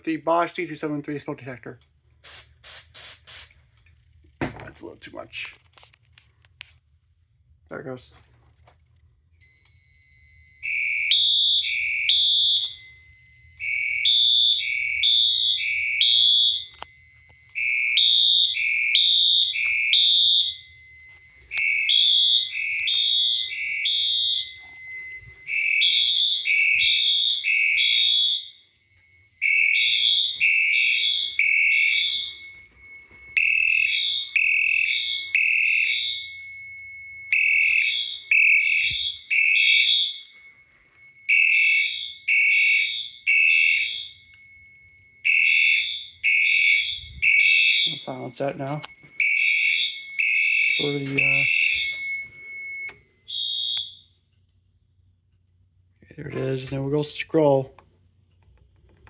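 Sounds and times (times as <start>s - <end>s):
fire alarm horns blasting: 7.8s - 58.3s
steady high tone: 9.4s - 53.3s.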